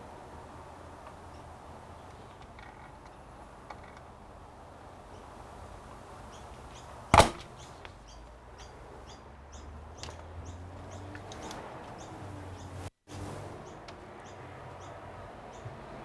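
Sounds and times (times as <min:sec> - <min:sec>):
sharp knock on workbench: 0:07.2 - 0:07.5.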